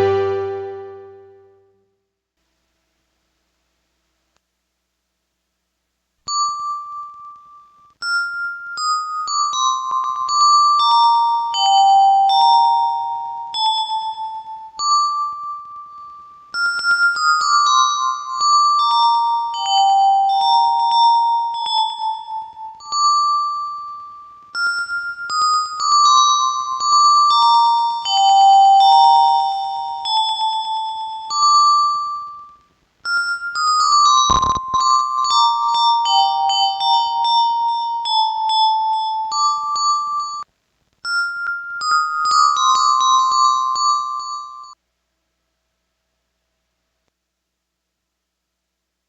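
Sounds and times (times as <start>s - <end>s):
keyboard bell-like melody with delay: 0.0s - 1.2s, 8.0s - 32.5s, 33.1s - 40.4s, 41.1s - 44.8s
keyboard melody with delay echoes: 0.0s - 1.6s.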